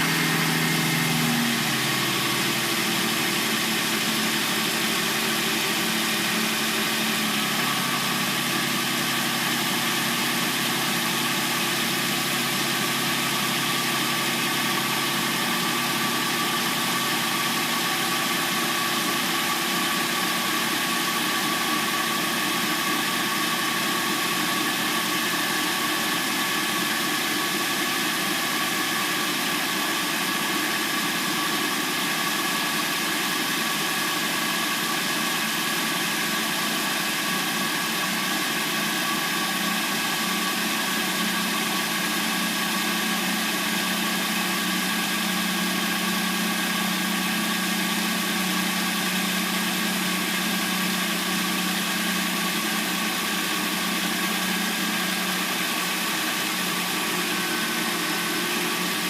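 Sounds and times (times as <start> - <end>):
car engine idling: 0.0 - 59.0.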